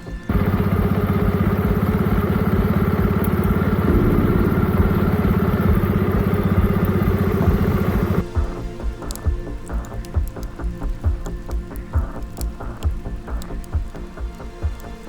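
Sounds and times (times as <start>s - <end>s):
motorcycle engine running: 0.3s - 8.6s.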